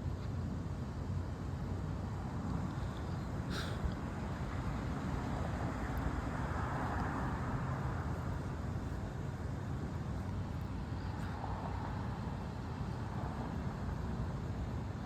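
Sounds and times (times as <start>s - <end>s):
street traffic rumble: 0.0s - 15.0s
vehicle passing: 4.1s - 13.8s.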